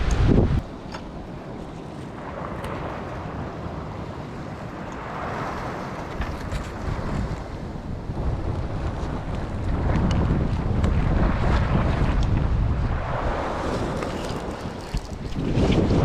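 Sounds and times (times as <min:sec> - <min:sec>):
sea surf against rocks: 0:00.0 - 0:16.0
wind buffeting microphone: 0:00.0 - 0:16.0.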